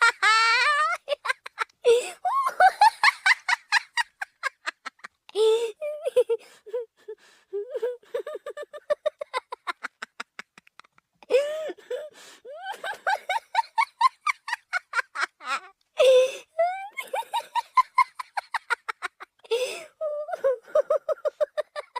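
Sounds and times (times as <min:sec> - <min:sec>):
cartoon laugh giggling: 0:00.0 - 0:01.7, 0:12.6 - 0:15.7, 0:20.2 - 0:21.9.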